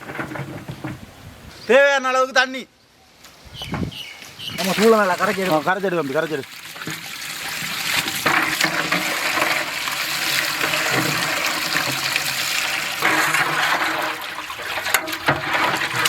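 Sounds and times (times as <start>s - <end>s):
water sloshing in a vessel: 4.6s - 16.0s.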